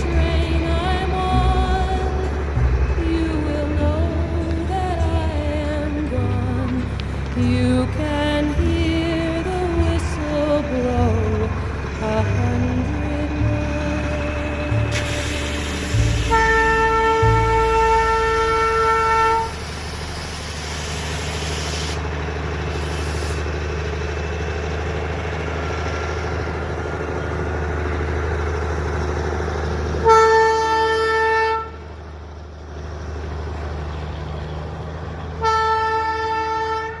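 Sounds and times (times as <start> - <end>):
train rumbling: 0.0 - 37.0
train horn blasts: 14.9 - 19.8, 30.0 - 31.9, 35.4 - 37.0.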